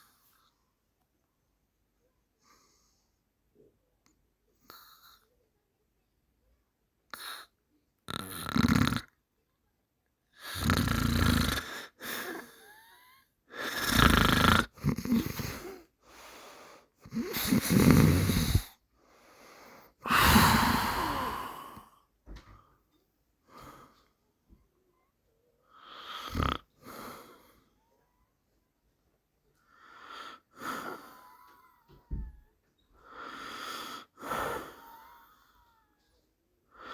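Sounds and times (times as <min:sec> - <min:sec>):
person snoring: 0:10.4 - 0:13.0, 0:13.6 - 0:15.8, 0:17.0 - 0:18.8, 0:20.0 - 0:21.9, 0:25.8 - 0:27.4.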